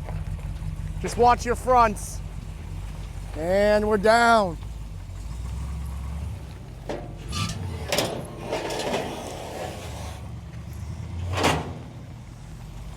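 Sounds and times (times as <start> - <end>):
low engine rumble: 0.0 - 12.9
clunks and knocks: 6.2 - 12.9.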